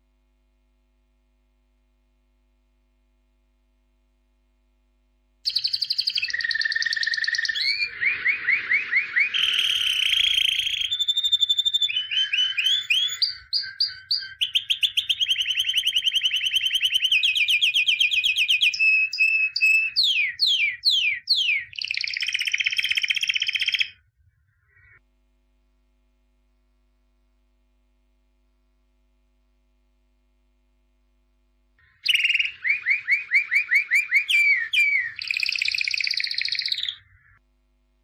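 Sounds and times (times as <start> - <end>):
songbird singing trills and whistles: 5.5 - 25.0, 31.9 - 37.4.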